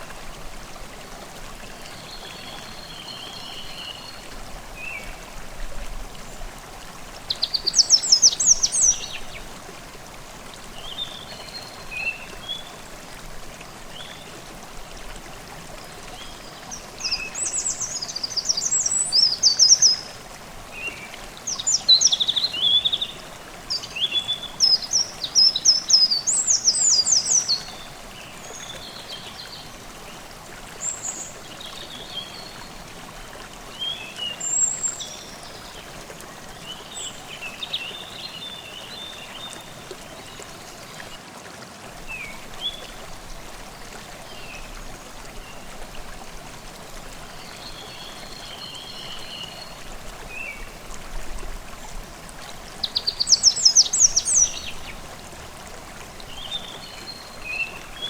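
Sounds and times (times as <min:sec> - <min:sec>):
stream babbling: 0:00.0 - 0:58.0
songbird singing: 0:07.2 - 0:09.5, 0:20.8 - 0:30.2, 0:33.7 - 0:41.2, 0:47.3 - 0:50.8, 0:52.7 - 0:55.3, 0:56.2 - 0:58.0.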